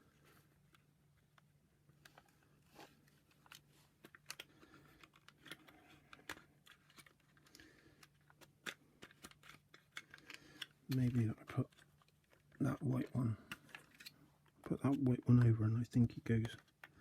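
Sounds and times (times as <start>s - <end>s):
clicks and rustles of plastic: 0.0s - 17.0s.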